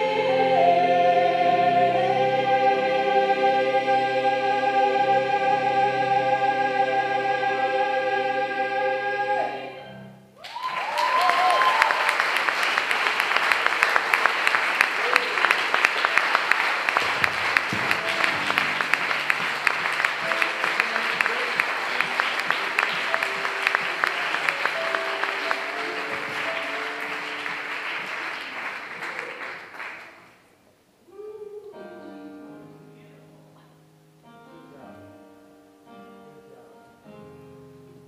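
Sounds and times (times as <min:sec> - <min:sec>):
audience applauding: 0:10.4 - 0:30.5.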